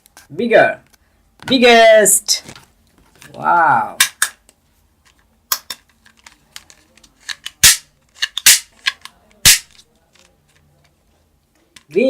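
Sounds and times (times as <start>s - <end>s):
plastic toy guns clicking: 5.5s - 10.3s.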